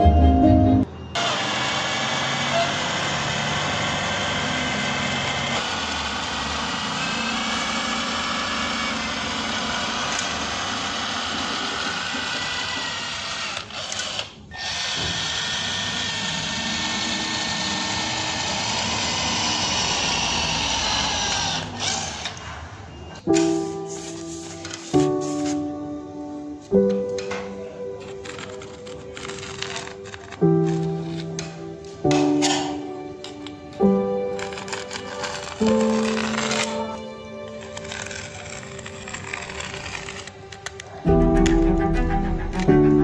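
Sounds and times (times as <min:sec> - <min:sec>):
small power tool motor: 0:01.2 - 0:22.8, 0:28.2 - 0:31.3, 0:34.3 - 0:40.9.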